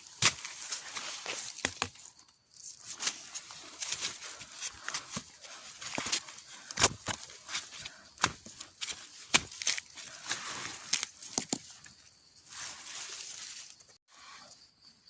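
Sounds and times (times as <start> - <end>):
dry leaves rustling underfoot: 0.0 - 14.0
twigs snapping: 5.8 - 11.8.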